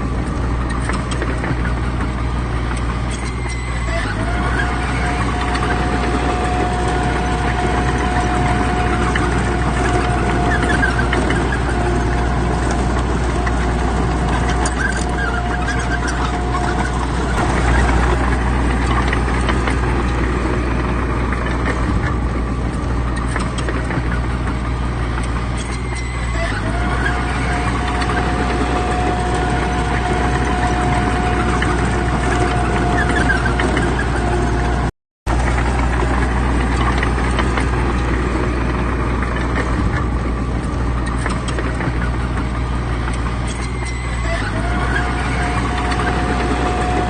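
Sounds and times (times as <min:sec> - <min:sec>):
diesel machinery rumbling: 0:00.0 - 0:47.0
thin steady whine: 0:25.0 - 0:47.0.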